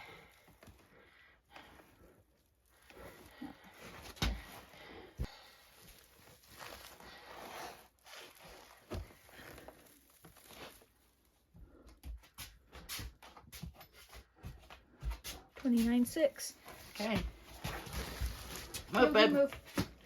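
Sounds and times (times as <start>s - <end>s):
bag of potatoes rustling: 2.4s - 11.4s, 16.6s - 20.0s.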